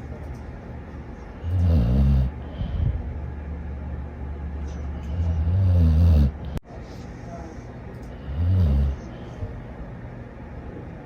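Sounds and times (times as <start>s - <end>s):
dog snoring: 1.4s - 2.7s, 5.1s - 6.6s, 8.2s - 9.1s.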